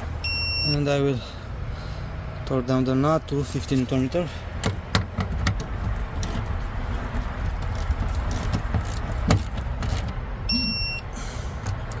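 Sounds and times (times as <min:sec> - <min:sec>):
short electronic beep: 0:00.2 - 0:00.8, 0:10.5 - 0:11.1.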